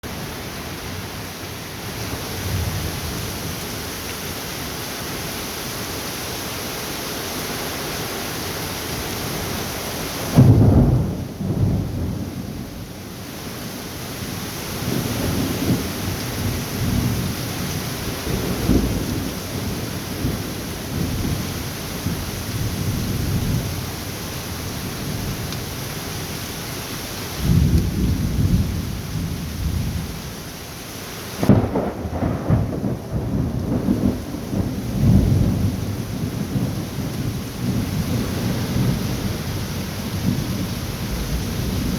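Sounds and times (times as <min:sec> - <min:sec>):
steady rain: 0:00.0 - 0:41.9
thunder crack and rumbling: 0:10.3 - 0:13.0, 0:18.2 - 0:23.7, 0:31.4 - 0:41.9.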